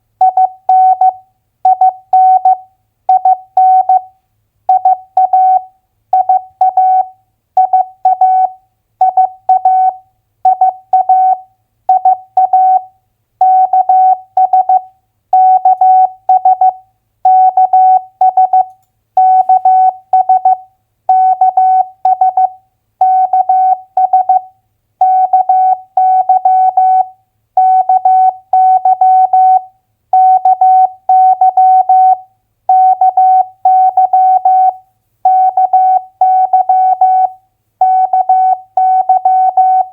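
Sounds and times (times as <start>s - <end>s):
morse code beeps: 6.2s - 29.6s, 35.3s - 39.9s.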